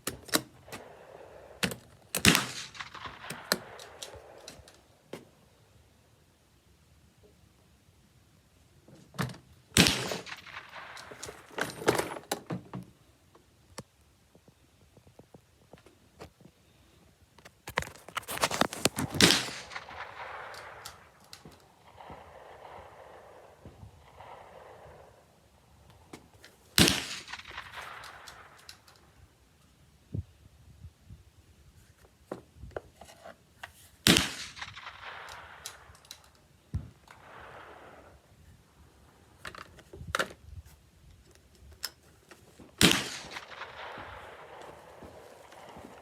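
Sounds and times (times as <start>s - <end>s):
rifle shot echoing: 0.0s - 5.0s, 9.8s - 11.6s, 18.9s - 29.2s, 34.0s - 38.3s, 42.7s - 46.0s
rifle shot with ringing tail: 19.1s - 25.3s, 26.8s - 28.6s, 42.8s - 46.0s.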